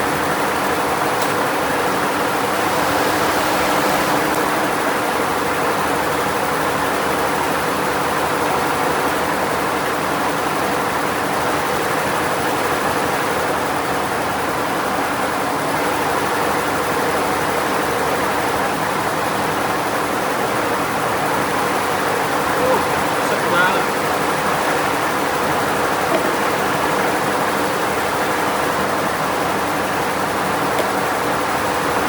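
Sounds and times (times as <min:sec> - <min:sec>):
steady machine noise: 0:00.7 - 0:07.4.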